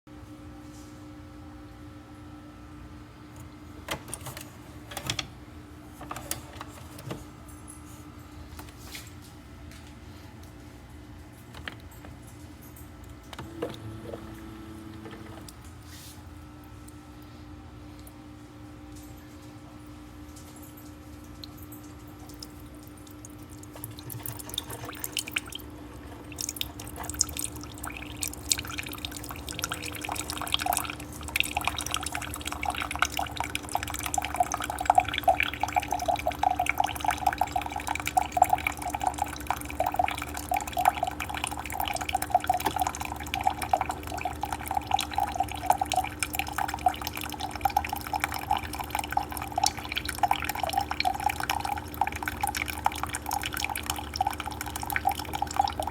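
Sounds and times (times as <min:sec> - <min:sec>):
coffee maker humming: 0:02.9 - 0:07.5, 0:13.1 - 0:16.4, 0:22.2 - 0:55.9
coffee streaming into cup: 0:13.4 - 0:15.7, 0:22.4 - 0:55.9.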